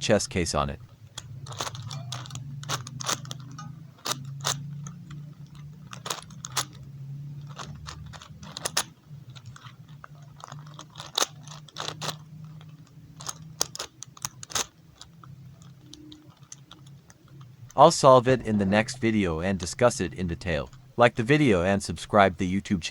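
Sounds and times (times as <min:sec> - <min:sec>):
steady low hum: 0:00.0 - 0:22.9
puzzle cube clicking as turned: 0:01.1 - 0:06.8, 0:07.4 - 0:17.5.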